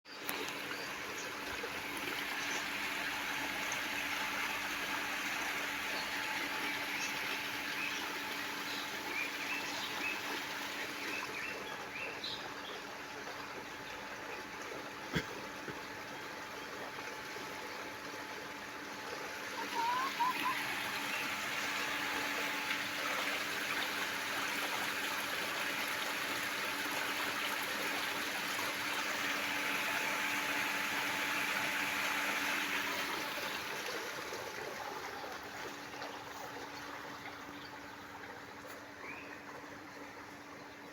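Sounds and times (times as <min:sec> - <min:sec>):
water-like noise: 0:00.1 - 0:40.9
small birds chirping: 0:19.6 - 0:21.9.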